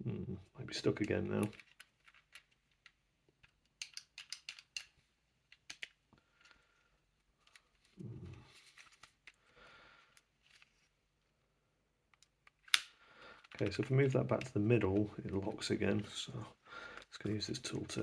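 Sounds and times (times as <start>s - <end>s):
wooden puzzle pieces clicking: 0.8s - 8.0s, 12.1s - 16.0s.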